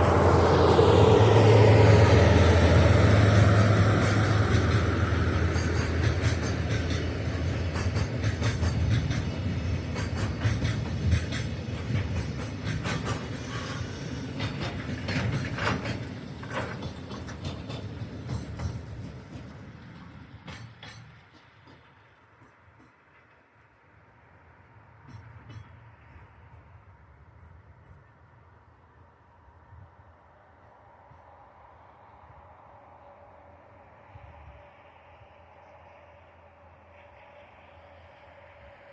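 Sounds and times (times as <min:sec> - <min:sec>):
train wagons rattling over rails: 0:00.0 - 0:27.1
locomotive engine drone: 0:00.0 - 0:38.9.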